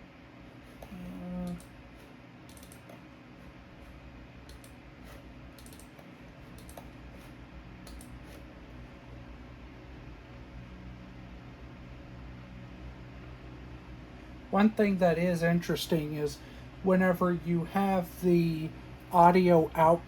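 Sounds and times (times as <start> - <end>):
steady low hum: 0.0 - 20.0
keyboard and mouse clicking: 2.5 - 3.0, 3.8 - 7.0, 7.8 - 8.4.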